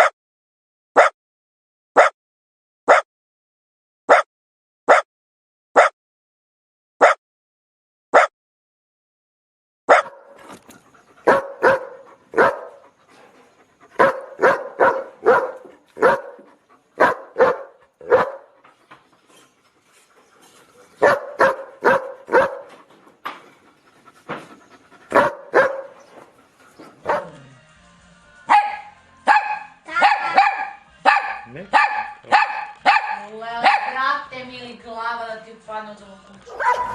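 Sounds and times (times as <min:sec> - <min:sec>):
dog barking: 0:01.0 - 0:01.2, 0:02.0 - 0:02.2, 0:04.1 - 0:04.3, 0:04.9 - 0:05.1, 0:07.0 - 0:07.2, 0:08.1 - 0:08.3, 0:09.9 - 0:10.4, 0:11.2 - 0:12.9, 0:14.0 - 0:18.6, 0:21.0 - 0:22.8, 0:25.1 - 0:26.0, 0:27.0 - 0:27.4, 0:28.5 - 0:34.0, 0:36.4 - 0:36.9.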